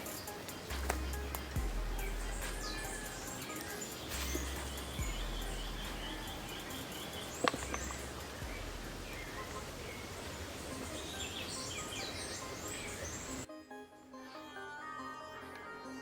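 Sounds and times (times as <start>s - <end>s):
birds chirping: 0.0s - 13.5s
sharp snap: 0.7s - 1.4s.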